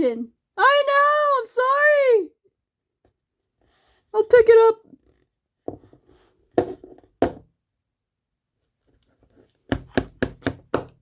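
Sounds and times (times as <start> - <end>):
objects knocking on hard surface: 5.6 - 7.5.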